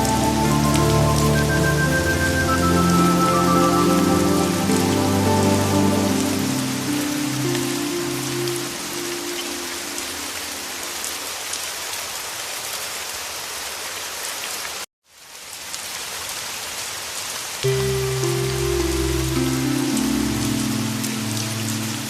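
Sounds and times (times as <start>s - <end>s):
soft music with low tones: 0.0s - 10.6s, 17.7s - 22.0s
heavy rain falling: 0.0s - 22.0s.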